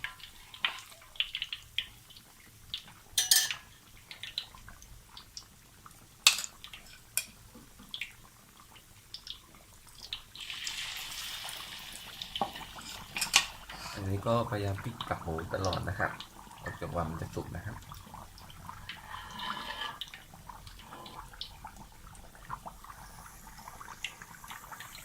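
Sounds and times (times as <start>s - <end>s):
oil popping and crackling: 0.0s - 19.3s, 20.0s - 25.0s
meat sizzling: 0.0s - 25.0s
utensil clinking against pan: 3.2s - 3.7s, 6.3s - 7.3s.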